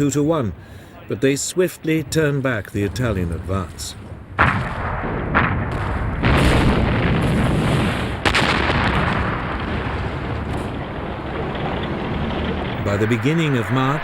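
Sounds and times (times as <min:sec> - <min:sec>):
heavy rumble of guns: 0:02.8 - 0:14.0
artillery booms: 0:02.9 - 0:14.0.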